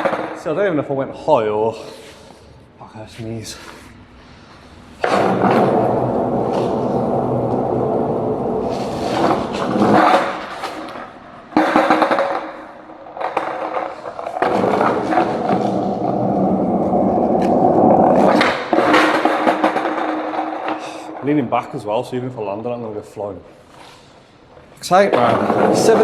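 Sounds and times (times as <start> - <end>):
skateboard clacking: 0.0 - 0.4, 5.0 - 20.9, 25.2 - 26.0
skateboard wheels rolling on wet pavement: 5.0 - 20.8, 25.2 - 26.0.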